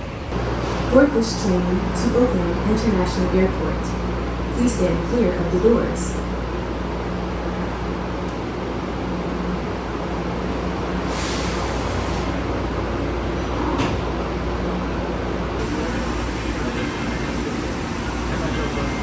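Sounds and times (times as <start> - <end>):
train humming at platform: 0.0 - 19.0
air hiss: 10.6 - 12.7.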